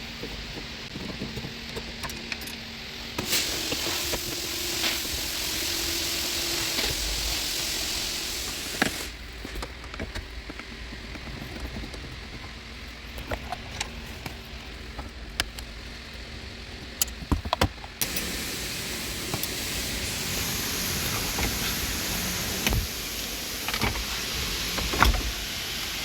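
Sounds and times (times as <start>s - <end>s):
car blower fan rushing air: 3.2s - 9.2s, 18.0s - 26.0s.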